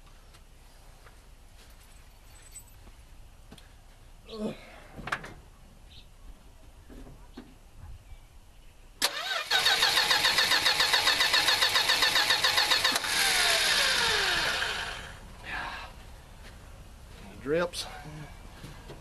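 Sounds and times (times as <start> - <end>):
engine cranking by starter: 9.0 - 15.2.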